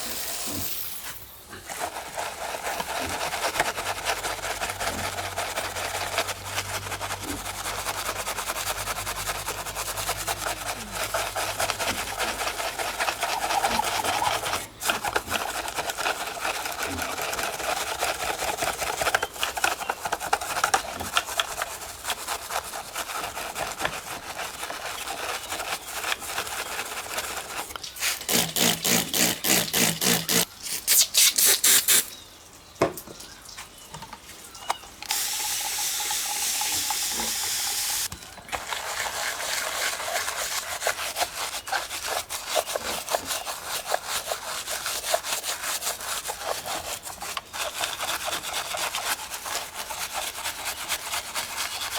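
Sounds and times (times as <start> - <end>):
water spraying: 0.0 - 17.2, 25.7 - 32.2, 35.0 - 45.2
brush scrubbing: 0.0 - 32.1, 35.1 - 51.9.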